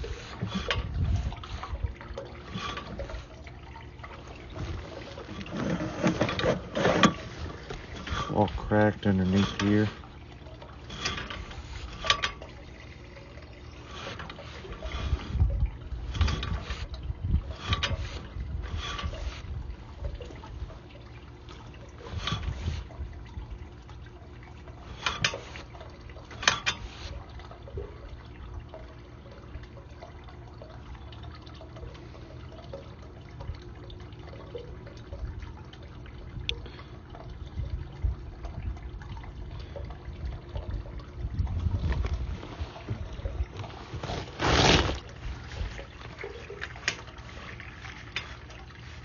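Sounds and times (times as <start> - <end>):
water trickling in a sewer: 0.0 - 49.0
steady low rumble: 37.2 - 43.9.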